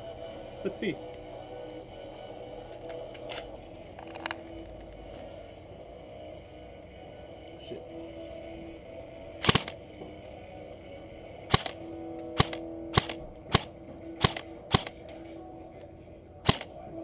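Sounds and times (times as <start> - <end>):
airsoft gun shots: 9.4 - 9.8, 11.5 - 11.8, 12.4 - 15.0, 16.4 - 16.7.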